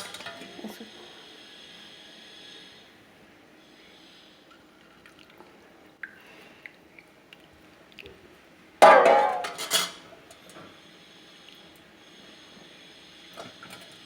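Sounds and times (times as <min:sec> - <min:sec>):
utensils clinking: 0:08.8 - 0:10.0.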